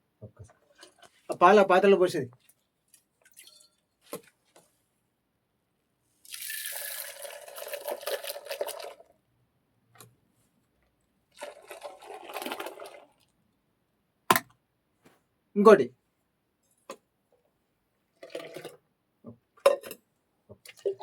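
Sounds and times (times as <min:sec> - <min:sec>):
liquid pouring into a pot: 0:03.2 - 0:03.8, 0:06.2 - 0:09.1, 0:11.3 - 0:13.3, 0:18.2 - 0:18.8.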